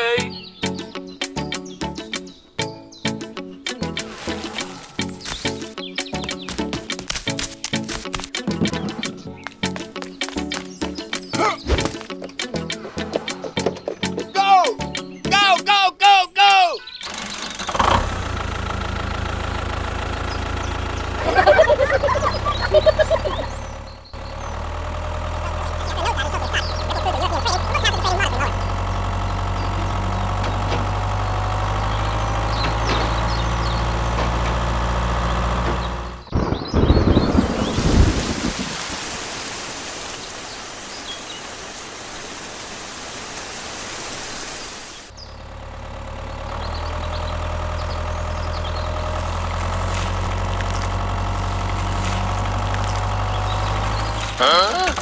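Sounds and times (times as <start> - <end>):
small motor humming: 17.0 - 36.3, 45.2 - 55.0
loud clatter: 17.0 - 37.8, 45.5 - 55.0
rushing hiss: 37.1 - 45.1.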